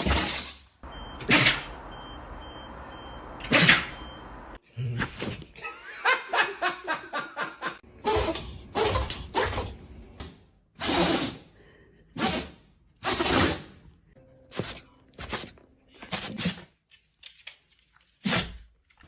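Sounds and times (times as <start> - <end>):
dog sneezing: 1.2 - 1.7, 3.4 - 4.0, 8.0 - 9.8, 10.8 - 11.5, 12.2 - 13.8, 14.5 - 16.7.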